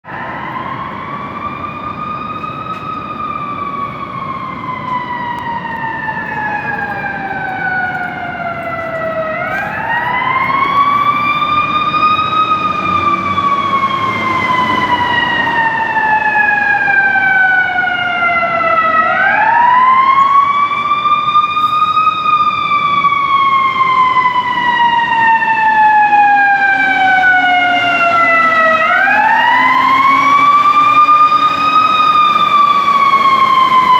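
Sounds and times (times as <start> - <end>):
fire engine siren wailing: 0.0 - 33.9.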